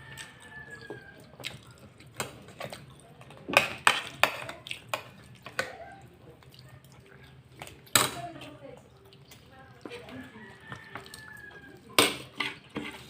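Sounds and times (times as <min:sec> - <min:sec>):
mouth clicks and smacks chewing: 0:00.1 - 0:03.4, 0:04.5 - 0:07.9, 0:08.8 - 0:09.8.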